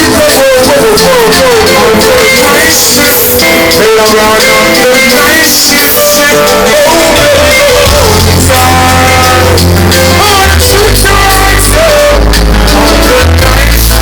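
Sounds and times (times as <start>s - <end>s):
heavy bass line: 0.0s - 14.0s
live reggae band music: 0.0s - 14.0s
person singing: 0.0s - 14.0s.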